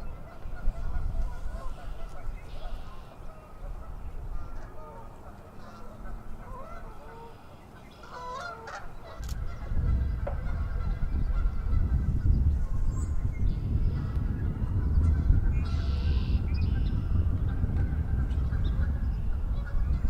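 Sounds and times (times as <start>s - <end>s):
geese honking: 0.0s - 12.4s
low rumbling noise: 9.0s - 20.0s.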